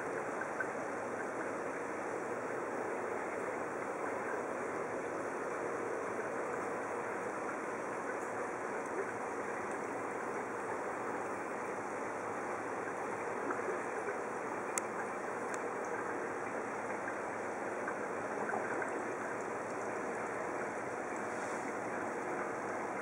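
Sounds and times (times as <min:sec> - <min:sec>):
faint clicks: 0:14.7 - 0:16.1.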